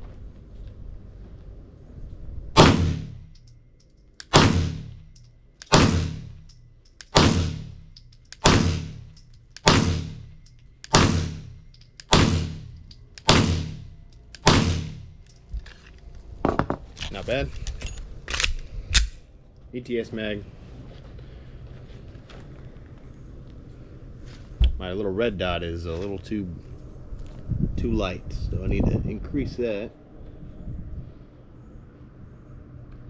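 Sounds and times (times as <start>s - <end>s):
pistol shots: 2.6s - 3.3s, 4.2s - 6.4s, 7.0s - 15.2s.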